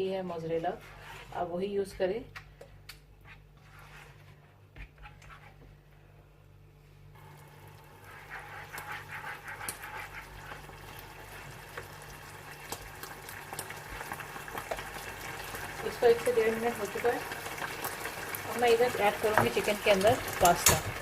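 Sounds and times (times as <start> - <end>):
sauce bubbling in a pan: 7.2 - 21.0.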